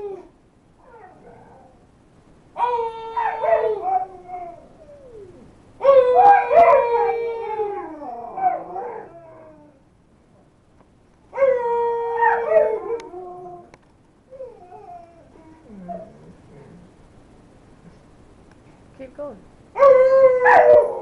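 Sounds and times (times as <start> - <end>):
dogs howling: 0.0 - 1.8, 2.6 - 9.8, 11.4 - 16.9, 19.8 - 21.0.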